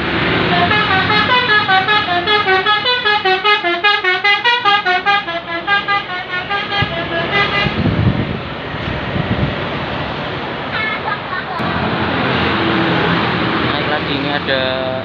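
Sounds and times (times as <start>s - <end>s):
bus musical horn melody: 0.4s - 8.1s.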